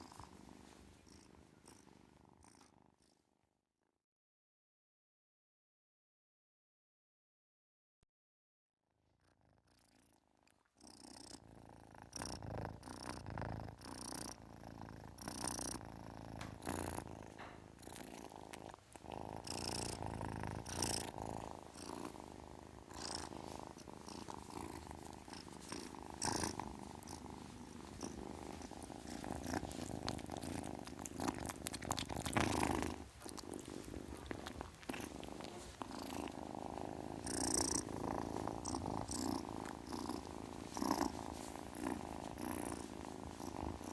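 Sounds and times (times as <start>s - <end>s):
kitten purring: 0.0s - 3.4s, 9.1s - 43.9s.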